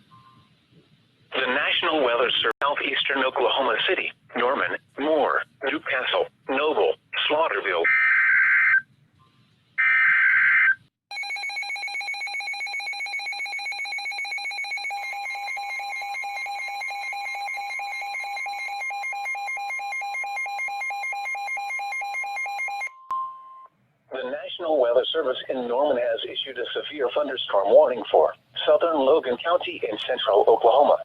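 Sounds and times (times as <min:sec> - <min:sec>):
fast pulsing electronic alarm beeps: 0:11.1 - 0:23.0.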